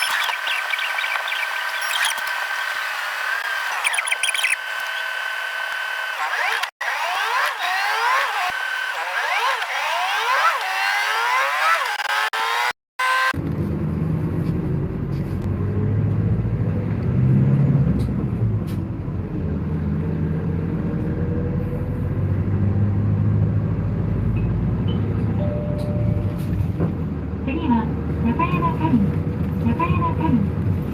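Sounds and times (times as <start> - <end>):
road rumble: 13.3 - 30.9.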